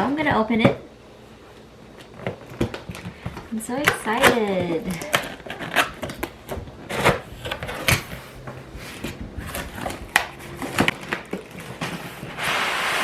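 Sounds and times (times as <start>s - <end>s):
sharp knocks: 4.9s - 11.9s.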